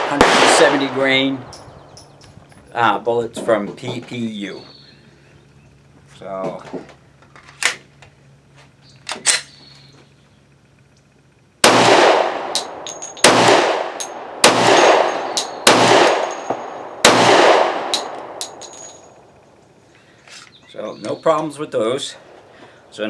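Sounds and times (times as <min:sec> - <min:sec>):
pistol shots with echo: 0:00.0 - 0:01.7, 0:11.6 - 0:19.0
faint metallic clinks: 0:12.6 - 0:13.3, 0:16.2 - 0:16.8, 0:18.0 - 0:19.3.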